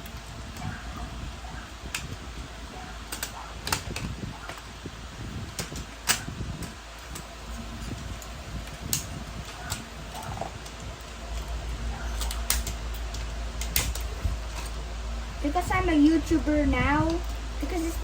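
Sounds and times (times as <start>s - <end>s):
steady low hum: 0.0s - 18.0s
toy parts clicking and snapping: 1.8s - 2.2s, 3.0s - 4.7s, 5.5s - 14.7s.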